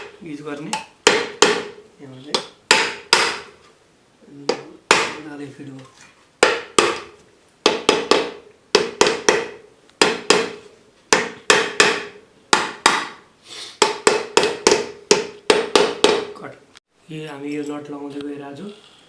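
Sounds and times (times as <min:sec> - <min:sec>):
plastic hammer knocking on metal: 0:13.8 - 0:16.4.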